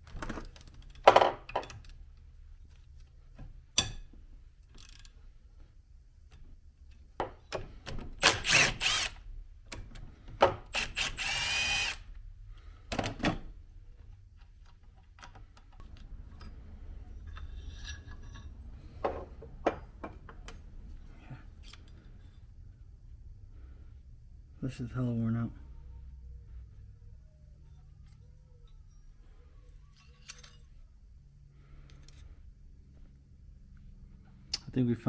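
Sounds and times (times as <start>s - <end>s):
power driver whirring: 8.2s - 9.2s, 10.7s - 12.1s.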